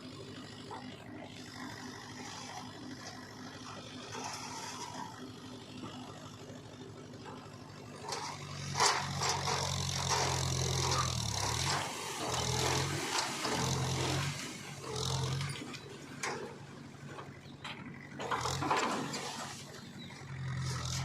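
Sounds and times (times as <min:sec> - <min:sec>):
diesel engine under load: 0:00.0 - 0:21.0
metallic knocks and scraping: 0:07.2 - 0:14.3.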